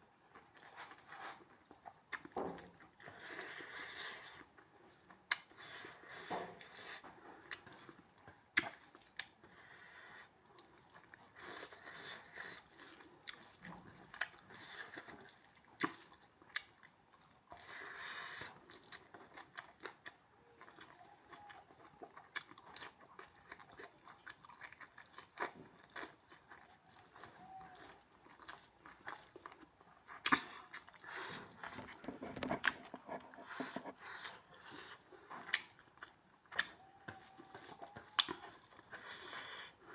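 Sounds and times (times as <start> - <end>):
person chewing and biting: 10.8 - 39.9.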